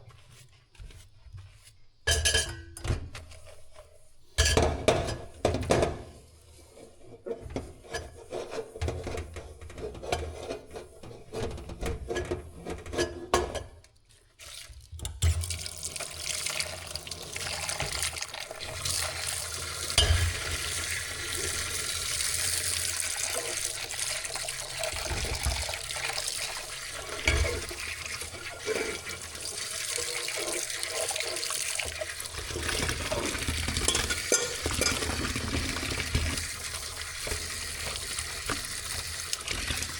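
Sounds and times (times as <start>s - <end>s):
dishes and utensils clinking: 2.1s - 3.0s, 19.8s - 21.6s, 25.0s - 29.3s, 32.6s - 36.4s
water running from tap: 14.4s - 39.9s.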